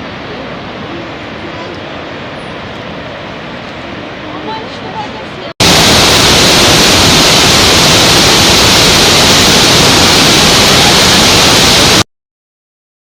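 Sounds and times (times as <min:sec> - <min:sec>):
loud steady rushing hiss: 0:05.6 - 0:12.0.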